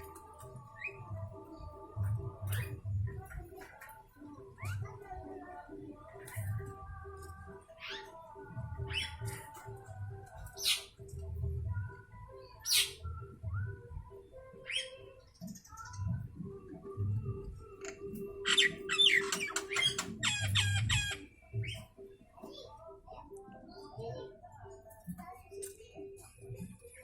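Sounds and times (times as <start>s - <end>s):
starling squawks: 18.4s - 21.9s
starling chattering whistled notes: 18.4s - 22.2s.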